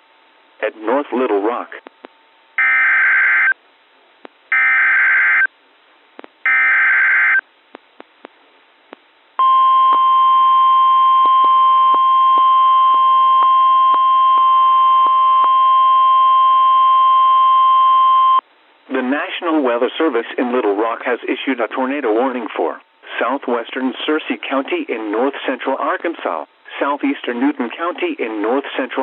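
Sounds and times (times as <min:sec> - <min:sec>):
steady piercing alarm tone: 0:02.6 - 0:03.6, 0:04.5 - 0:05.5, 0:06.4 - 0:07.4, 0:09.4 - 0:18.4.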